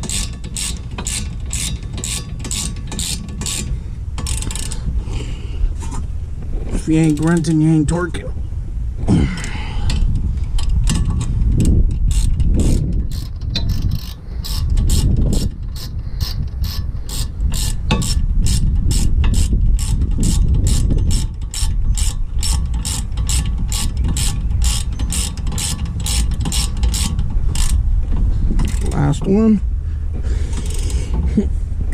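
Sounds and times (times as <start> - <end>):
ratchet clicking: 0.0 - 4.9, 9.4 - 27.8, 28.5 - 29.2, 30.5 - 31.2
low rumble: 14.7 - 31.9.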